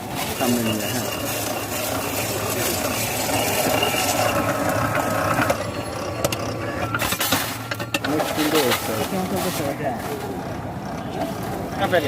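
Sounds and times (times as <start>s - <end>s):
machine hum: 0.0s - 8.0s.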